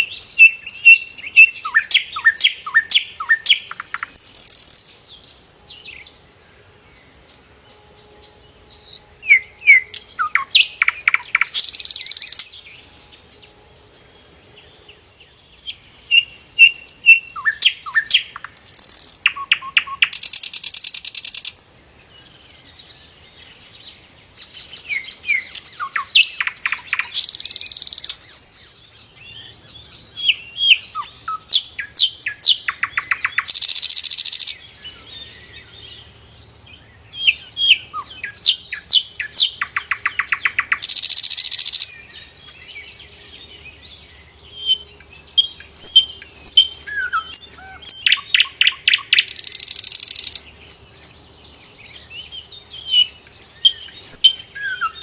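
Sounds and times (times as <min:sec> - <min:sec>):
bird whistling song: 0:00.0 - 0:04.9, 0:08.7 - 0:12.7, 0:15.7 - 0:21.8, 0:24.4 - 0:35.8, 0:37.1 - 0:42.6, 0:44.6 - 0:55.0.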